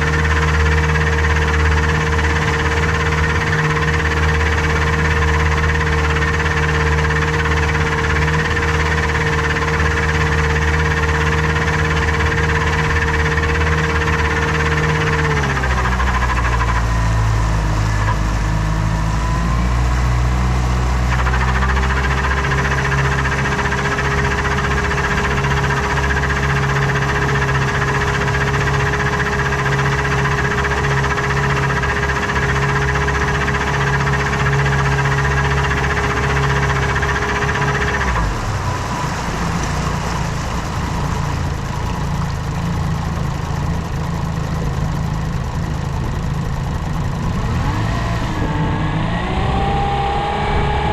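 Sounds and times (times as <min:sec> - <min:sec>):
held tone over engine: 0:00.0 - 0:50.9
outboard motor running: 0:00.0 - 0:50.9.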